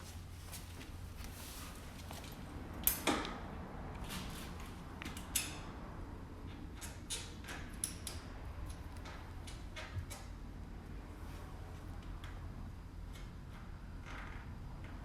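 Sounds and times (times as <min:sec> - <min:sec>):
bicycle parts clicking: 0:05.0 - 0:05.6.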